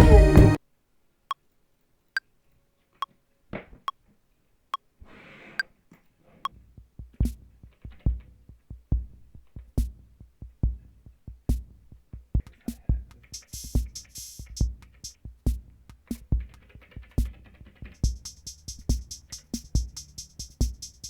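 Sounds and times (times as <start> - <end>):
drum machine beat: 0.0 - 0.6, 6.8 - 21.0.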